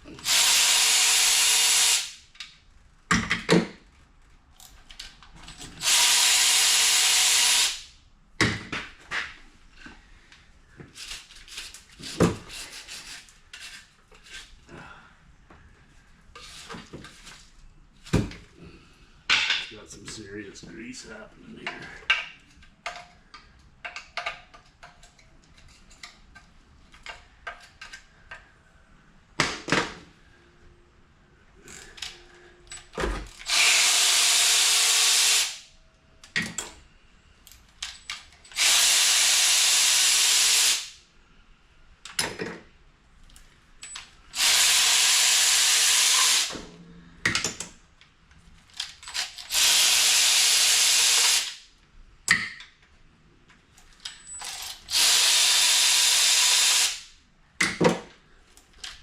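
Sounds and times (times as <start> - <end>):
metal parts clicking and clanking: 4.6 - 5.8, 21.6 - 28.4, 37.4 - 38.6, 47.2 - 49.5, 53.5 - 54.9
power tool hissing with motor tone: 33.5 - 35.6, 38.6 - 41.0, 44.4 - 46.5, 54.9 - 57.0.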